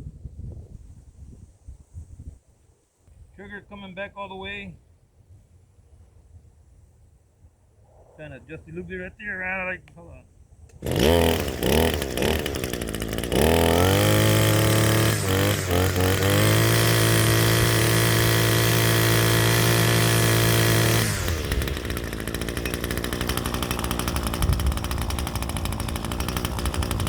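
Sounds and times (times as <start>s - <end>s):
string trimmer engine revving: 10.8s - 27.0s.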